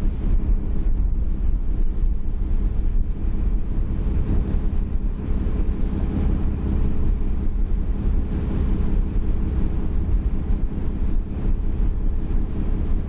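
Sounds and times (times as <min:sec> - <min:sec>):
ferry engine drone: 0:00.0 - 0:13.0
wind buffeting microphone: 0:00.0 - 0:13.0.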